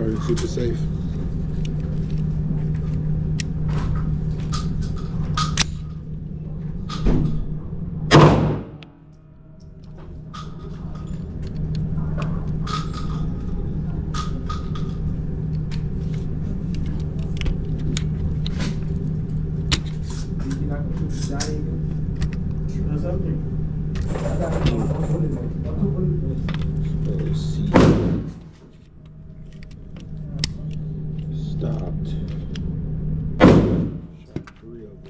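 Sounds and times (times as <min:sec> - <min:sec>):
steady low hum: 0:00.0 - 0:35.0
gunshot with echo: 0:08.1 - 0:08.8, 0:27.8 - 0:28.4, 0:33.4 - 0:34.1.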